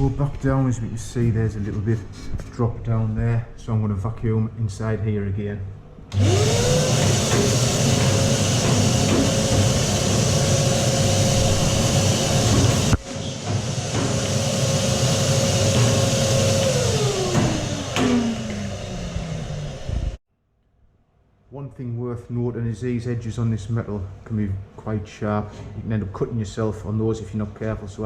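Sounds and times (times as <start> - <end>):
vacuum cleaner motor whine: 6.1 - 20.2
air rushing: 6.2 - 20.2
knocks: 7.0 - 10.3.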